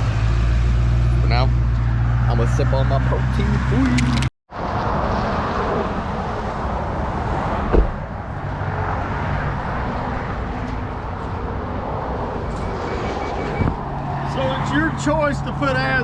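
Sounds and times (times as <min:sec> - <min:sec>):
thump: 0:07.7 - 0:08.0.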